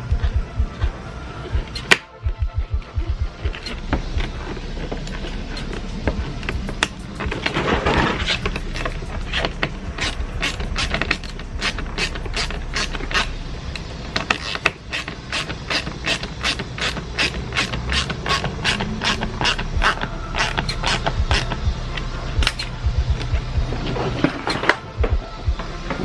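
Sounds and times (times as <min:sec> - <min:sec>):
hand ratchet clicking: 0:08.3 - 0:23.5.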